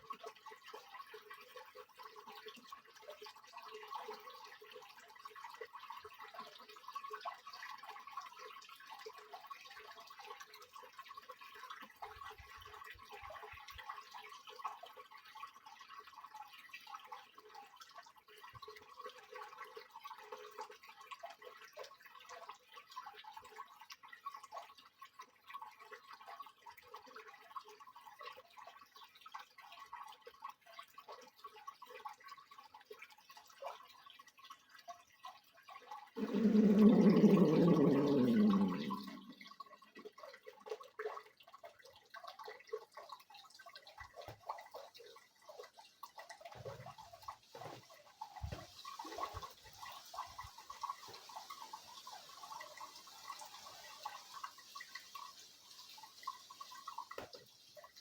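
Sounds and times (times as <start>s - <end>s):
water splashing in washing machine: 40.3s - 58.0s.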